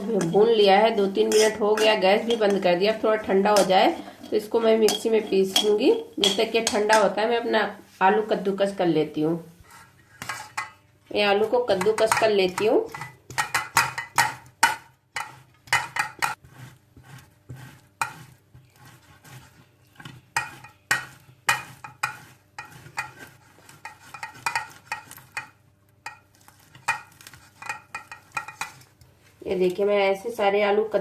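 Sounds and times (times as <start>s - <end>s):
potatoes grated on metal grater: 0.0s - 7.1s, 15.2s - 29.0s.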